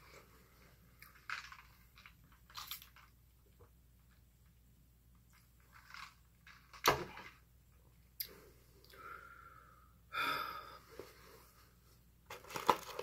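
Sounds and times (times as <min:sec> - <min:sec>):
packaging rustle: 0:12.3 - 0:13.0.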